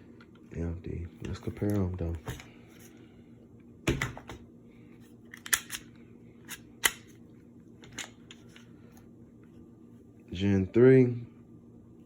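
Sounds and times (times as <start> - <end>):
pistols and magazines clicking: 5.3 - 5.9.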